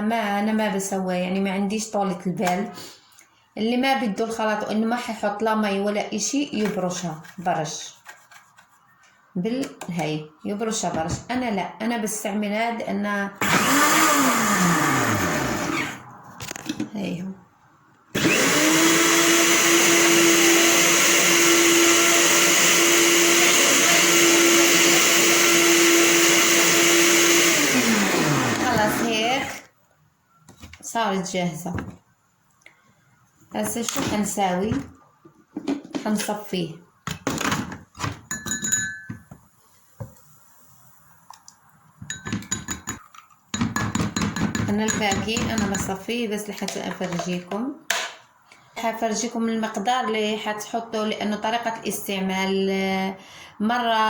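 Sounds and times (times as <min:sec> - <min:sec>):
electric blender running: 0:13.4 - 0:16.0, 0:18.2 - 0:29.6
glass and metal kitchenware clinking: 0:38.2 - 0:39.4, 0:42.0 - 0:45.9.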